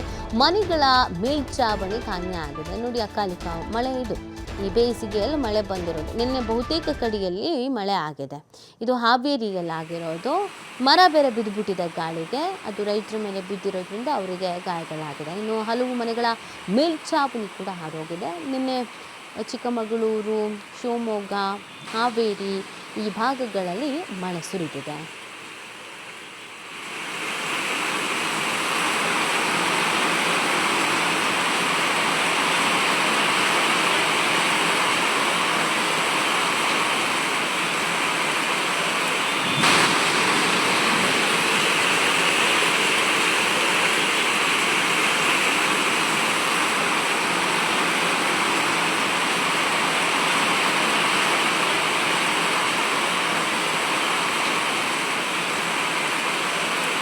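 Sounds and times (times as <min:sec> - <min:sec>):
heavy rain pouring: 0:00.0 - 0:07.3, 0:09.7 - 0:57.0
sharp crack: 0:39.4 - 0:43.2.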